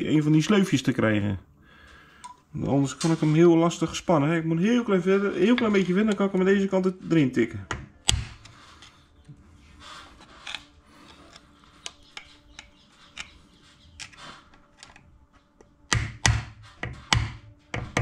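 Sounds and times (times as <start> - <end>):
steel parts scraping and clicking: 8.4 - 15.2.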